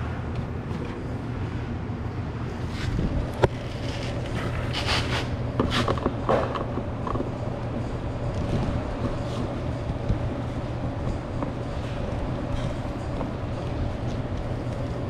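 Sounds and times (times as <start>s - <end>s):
low hum: 0.0s - 15.0s
plastic trim scraping and creaking: 2.6s - 7.3s.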